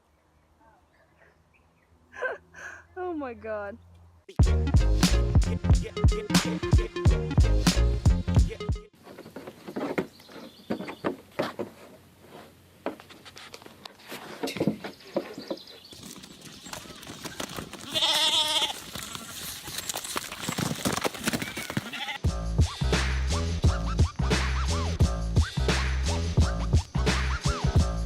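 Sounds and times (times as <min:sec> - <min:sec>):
loud quavering bleat: 0:17.9 - 0:18.8, 0:21.8 - 0:22.2.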